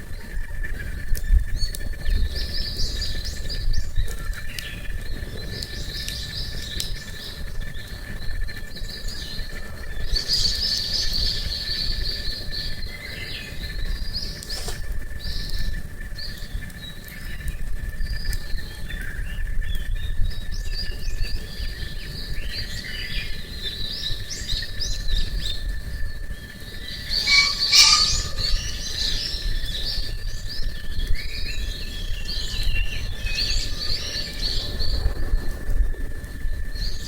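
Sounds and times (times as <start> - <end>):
small birds chirping: 0.0 - 35.6
faint thin tone: 27.1 - 29.0.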